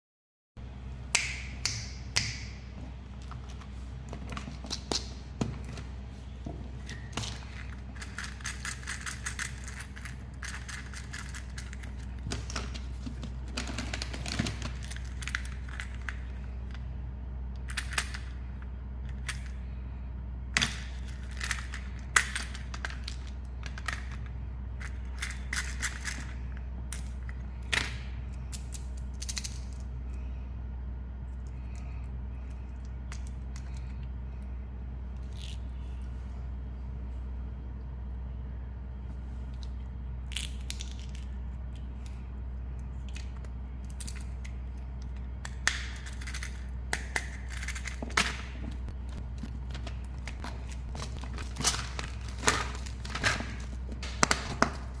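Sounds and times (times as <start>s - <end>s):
steady low hum: 0.6s - 55.0s
plastic wrappers crinkling: 48.7s - 55.0s.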